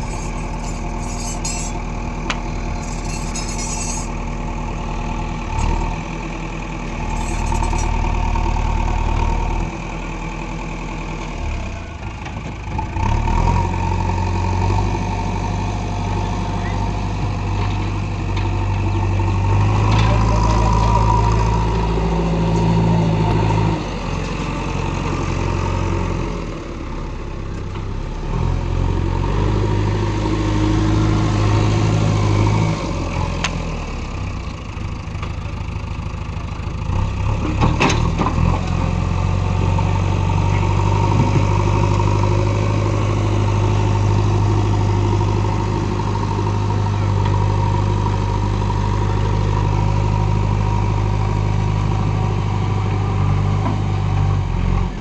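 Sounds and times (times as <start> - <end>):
diesel engine revving up and down: 0.0 - 34.9, 36.0 - 55.0.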